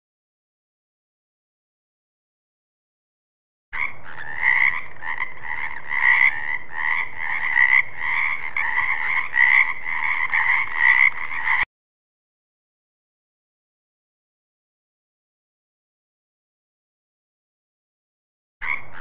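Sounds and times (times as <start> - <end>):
frogs croaking: 3.8 - 11.7, 18.6 - 19.0.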